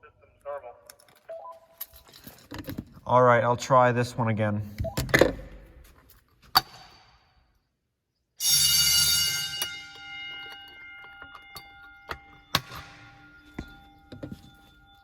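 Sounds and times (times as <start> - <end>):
fire alarm bell ringing: 8.4 - 15.0.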